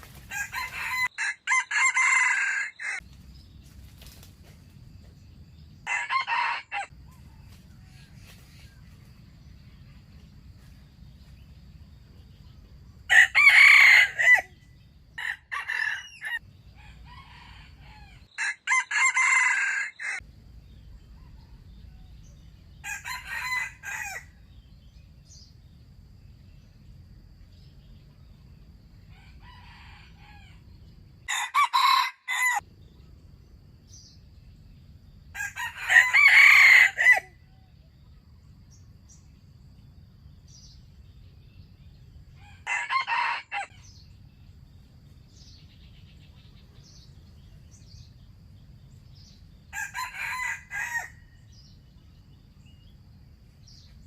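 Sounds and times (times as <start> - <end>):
roosters crowing: 0.0 - 3.0, 5.8 - 8.4, 13.1 - 20.2, 20.8 - 24.5, 29.1 - 32.6, 35.3 - 37.6, 42.4 - 44.1, 49.2 - 51.7.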